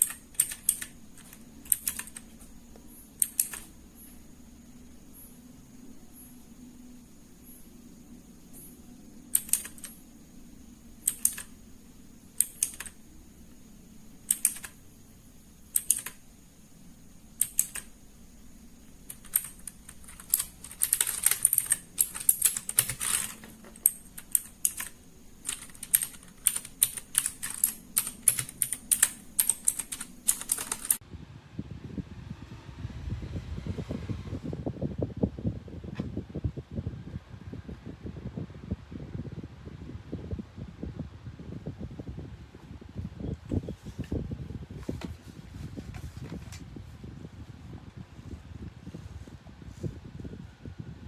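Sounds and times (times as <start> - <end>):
mechanical keyboard typing: 0.0 - 4.2, 8.5 - 10.1, 10.9 - 11.6, 12.3 - 13.1, 14.2 - 14.8, 15.6 - 16.2, 17.3 - 18.1, 18.9 - 31.0.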